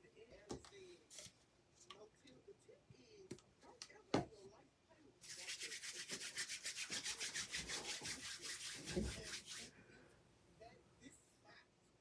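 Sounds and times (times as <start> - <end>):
hair being rubbed: 5.2 - 9.7.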